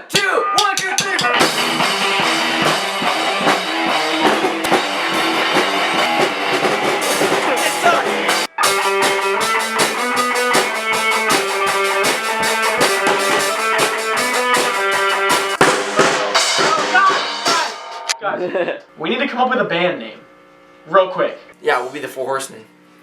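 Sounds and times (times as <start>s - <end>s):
rock music with guitar and drums: 0.5s - 18.2s.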